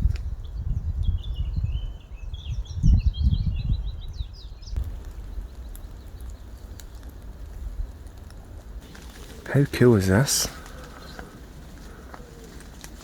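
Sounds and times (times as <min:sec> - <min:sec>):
songbird chirping and trilling: 0:00.2 - 0:06.6, 0:09.1 - 0:12.6.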